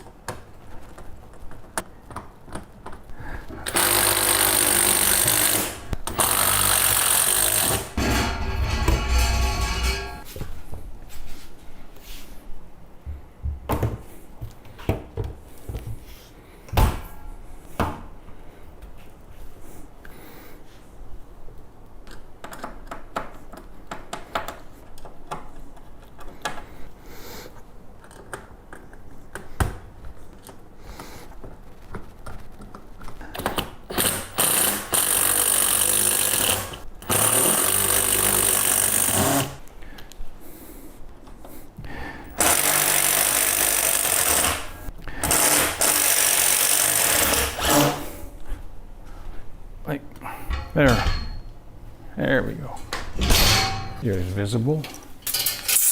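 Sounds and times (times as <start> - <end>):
power drill driving fasteners: 3.6 - 8.0, 33.9 - 39.6, 42.3 - 48.0.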